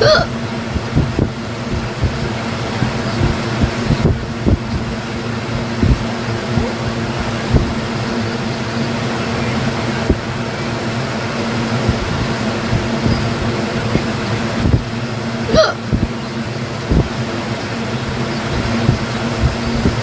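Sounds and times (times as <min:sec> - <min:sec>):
woman hiccuping: 0:00.0 - 0:00.4, 0:15.5 - 0:15.8
fan hum: 0:00.0 - 0:20.0.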